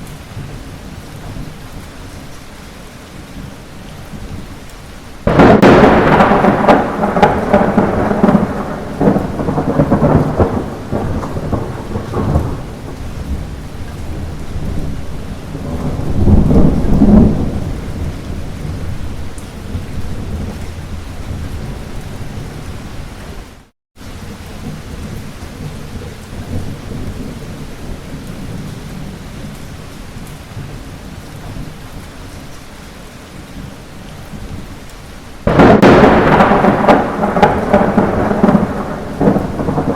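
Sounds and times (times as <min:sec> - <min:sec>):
light rain falling: 0:00.0 - 0:39.9
thunder rumbling: 0:05.2 - 0:23.4, 0:35.4 - 0:39.9.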